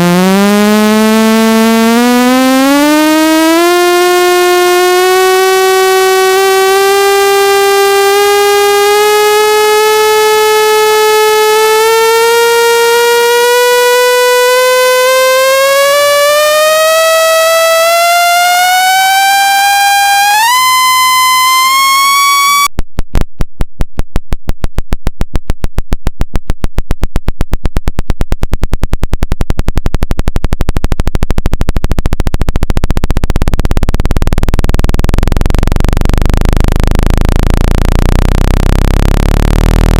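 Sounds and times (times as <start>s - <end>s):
buzzy tone gliding upward: 0.0s - 22.7s, 32.9s - 39.9s
sharp clicking pulses: 0.0s - 39.9s.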